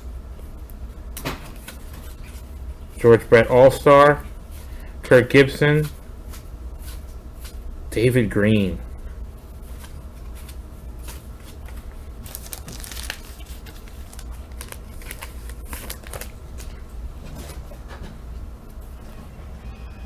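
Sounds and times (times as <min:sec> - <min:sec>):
wax paper wrappers crinkling: 0:09.5 - 0:16.8.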